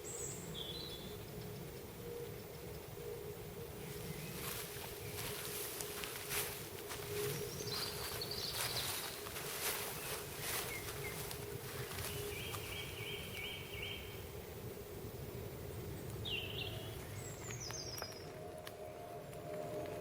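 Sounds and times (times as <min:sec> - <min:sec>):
steady low rumble: 0:00.2 - 0:20.0
birds calling: 0:03.7 - 0:14.2.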